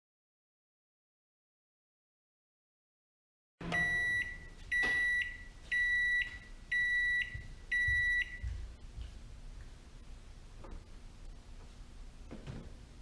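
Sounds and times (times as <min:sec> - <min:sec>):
microwave oven beeping: 0:03.6 - 0:08.6.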